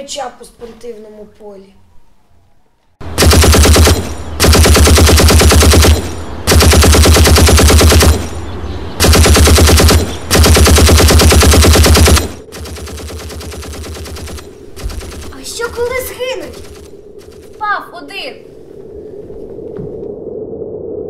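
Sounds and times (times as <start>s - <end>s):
machine-gun fire: 3.1s - 8.4s, 9.0s - 15.9s, 16.5s - 17.6s.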